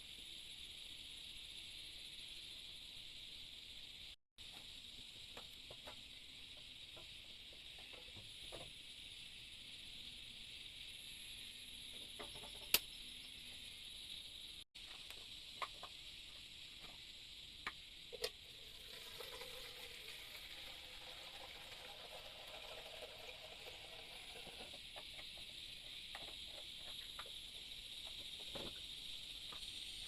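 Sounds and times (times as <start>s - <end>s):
high-pitched insect chorus: 0.0s - 30.0s.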